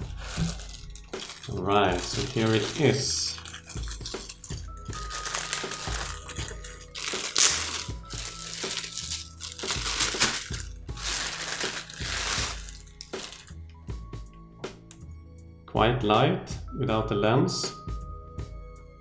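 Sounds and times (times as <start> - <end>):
plastic packaging crinkling: 0.0 - 13.6
quiet background music: 0.0 - 19.0.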